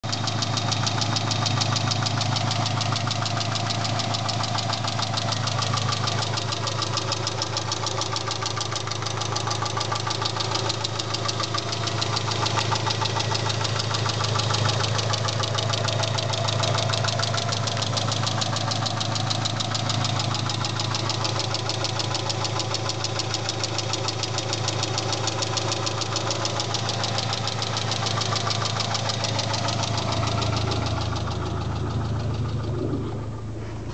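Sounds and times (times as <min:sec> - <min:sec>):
car engine running: 0:00.0 - 0:33.9
engine ticking and knocking: 0:00.0 - 0:33.9.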